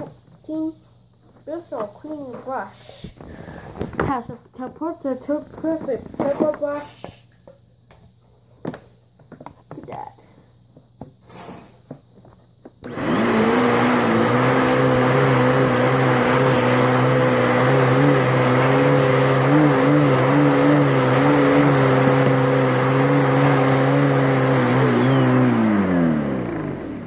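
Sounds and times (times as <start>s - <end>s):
vacuum cleaner motor whine: 12.7s - 27.0s.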